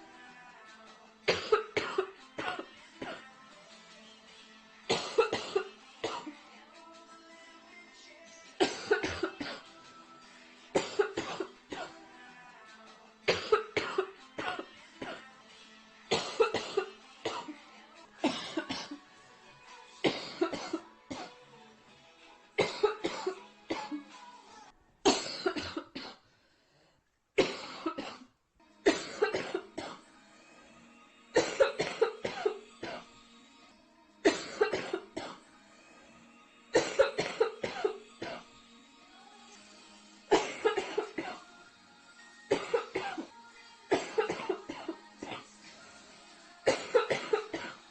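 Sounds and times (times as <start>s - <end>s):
faint music: 0.0s - 47.9s
girl coughing: 1.3s - 3.3s, 4.9s - 6.3s, 8.6s - 9.7s, 10.7s - 11.9s, 13.3s - 15.3s, 16.1s - 17.6s, 18.2s - 19.0s, 20.0s - 21.4s, 22.6s - 24.1s, 25.1s - 26.2s, 27.4s - 28.3s, 28.9s - 30.0s, 31.4s - 33.0s, 34.3s - 35.4s, 36.8s - 38.4s, 40.3s - 41.4s, 42.5s - 43.3s, 43.9s - 45.5s, 46.7s - 47.8s.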